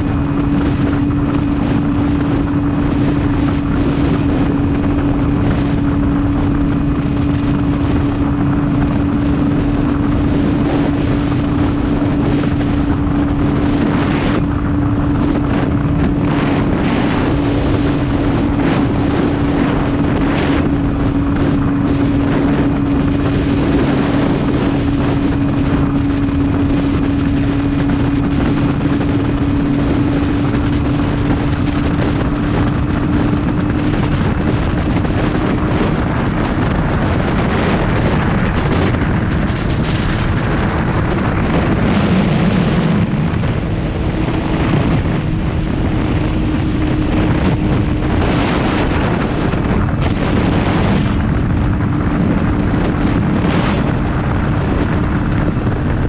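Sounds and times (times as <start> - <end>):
motorcycle engine running: 0.0 - 56.0
wind rushing over microphone: 0.0 - 56.0.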